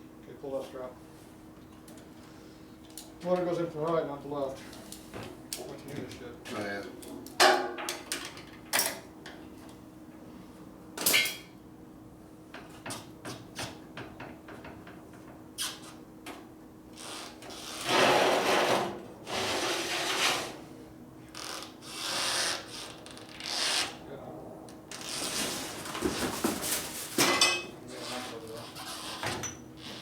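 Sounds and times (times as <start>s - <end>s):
scraping noises: 17.9s - 20.6s.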